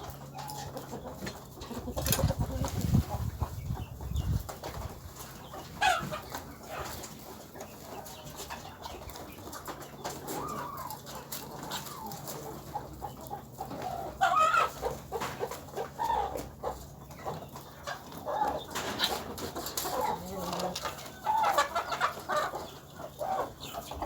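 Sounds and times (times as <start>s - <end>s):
chickens clucking: 0.0s - 24.0s.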